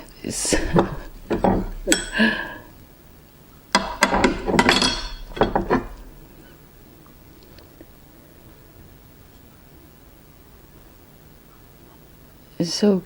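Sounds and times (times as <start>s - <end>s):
shells and tableware clinking on plate: 3.8s - 6.3s.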